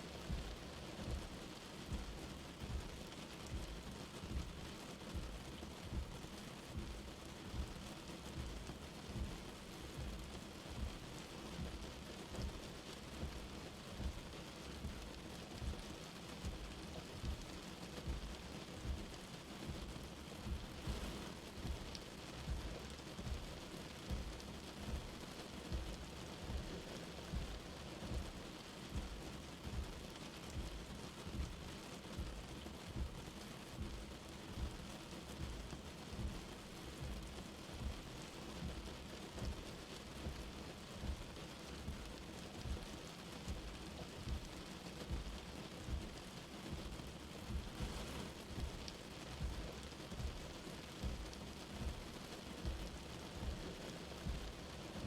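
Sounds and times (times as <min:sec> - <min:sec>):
light rain falling: 0:00.0 - 0:55.0
soft low thuds: 0:16.4 - 0:33.2, 0:33.8 - 0:38.0, 0:38.6 - 0:42.9, 0:43.5 - 0:54.6.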